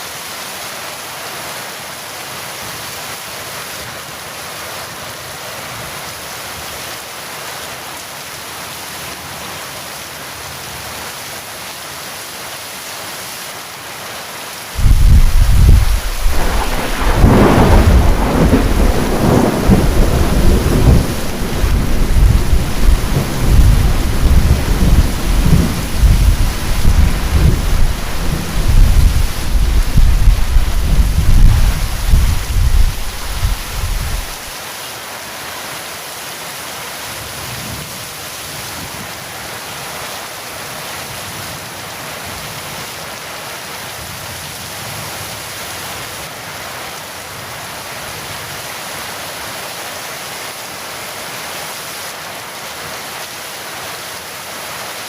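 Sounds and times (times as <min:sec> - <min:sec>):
heavy rain falling: 0:00.0 - 0:55.0
thunder crack and rumble: 0:14.8 - 0:34.5.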